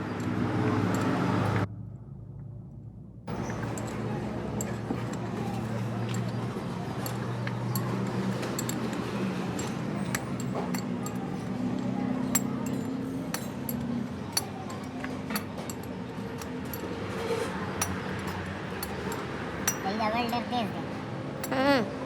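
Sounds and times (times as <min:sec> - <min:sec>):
metal tools clinking: 0:00.0 - 0:01.7, 0:03.3 - 0:20.8, 0:21.4 - 0:21.6
low hum: 0:00.0 - 0:07.9.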